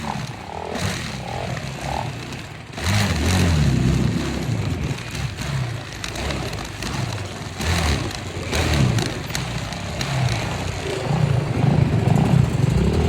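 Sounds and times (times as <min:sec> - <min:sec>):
vehicle engine revving: 0:00.0 - 0:13.0.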